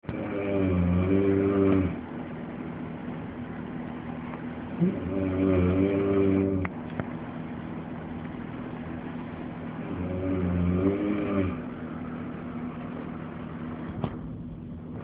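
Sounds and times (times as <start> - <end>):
steady low drone: 0.0 - 15.0
man snoring: 0.1 - 2.0, 4.8 - 6.7, 9.8 - 11.7.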